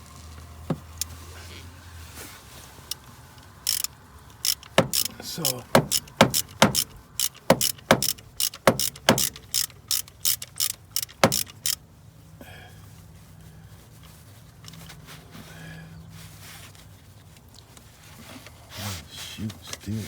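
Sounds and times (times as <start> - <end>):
ratchet wrench clicking: 3.6 - 11.8.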